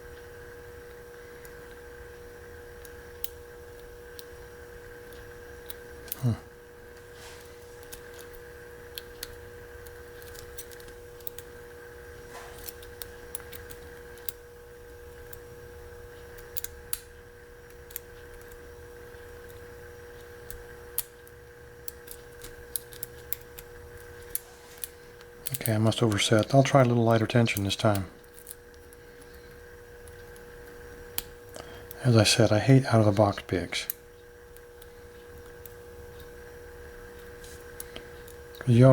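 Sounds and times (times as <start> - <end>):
steady electrical hum: 0.0 - 38.9.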